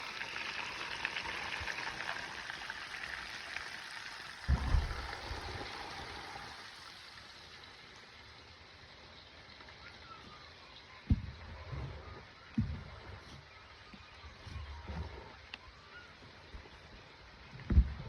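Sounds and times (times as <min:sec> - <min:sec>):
chicken sizzling in hot oil: 0:00.0 - 0:12.5
low thump: 0:04.5 - 0:05.2, 0:17.7 - 0:18.0.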